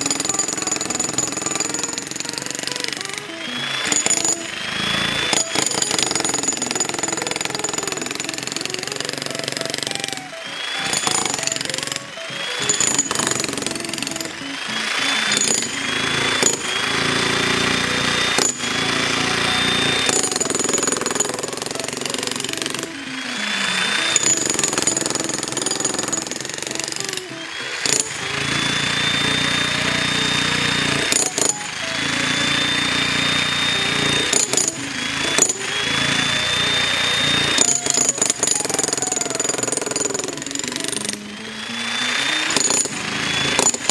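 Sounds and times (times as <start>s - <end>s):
jackhammer breaking concrete: 0.0s - 43.9s
motor whine: 0.0s - 43.9s.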